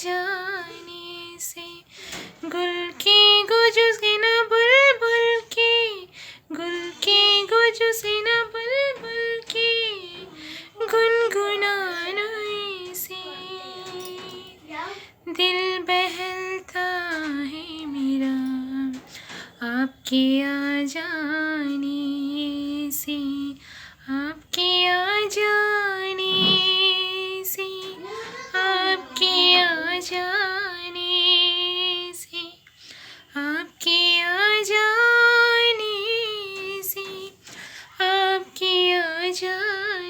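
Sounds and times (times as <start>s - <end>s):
woman singing with vibrato: 26.0s - 27.0s.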